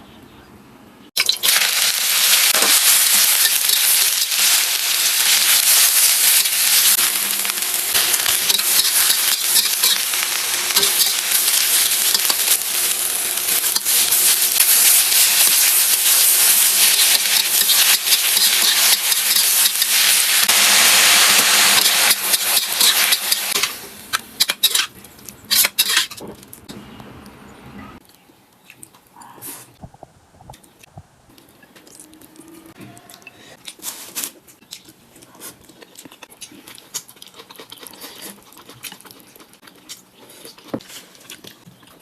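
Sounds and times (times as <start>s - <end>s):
vegetables sizzling in a pan: 1.2s - 24.9s.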